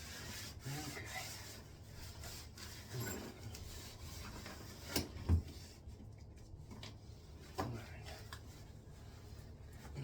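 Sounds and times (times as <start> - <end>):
rubbing and scraping: 0.0 - 6.3.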